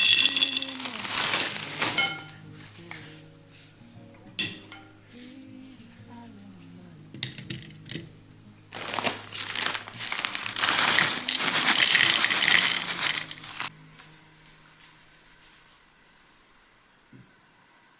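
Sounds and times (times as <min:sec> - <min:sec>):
crinkling and rustling: 0:00.0 - 0:03.2, 0:08.7 - 0:13.7.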